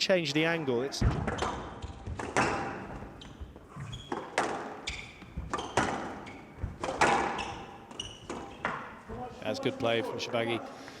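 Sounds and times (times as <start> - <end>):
shoe squeaks: 1.3 - 8.9.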